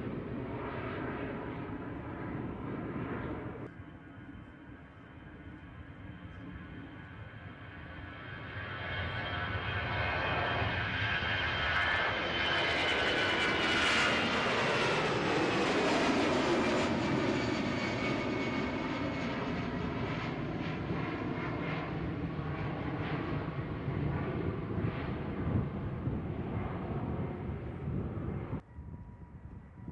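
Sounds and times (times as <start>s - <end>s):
jet engines passing by: 0.0s - 28.6s.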